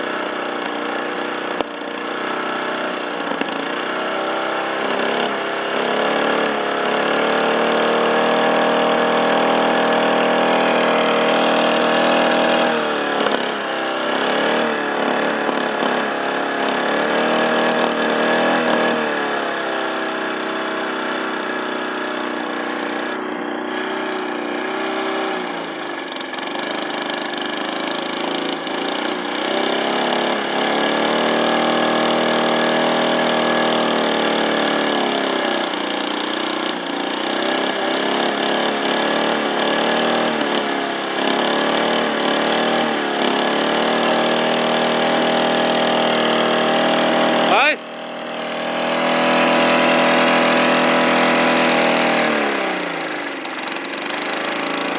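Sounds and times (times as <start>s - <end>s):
lawn mower engine running: 0.0s - 54.9s.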